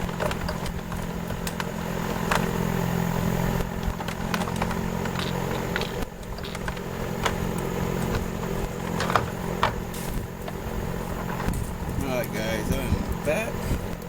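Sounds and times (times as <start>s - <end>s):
engine humming: 0.0s - 14.0s.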